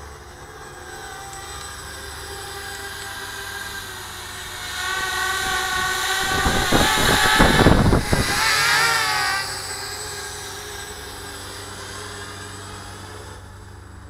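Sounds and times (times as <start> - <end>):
drone propellers whining: 0.0 - 14.0
prop wash buffeting microphone: 4.2 - 9.5.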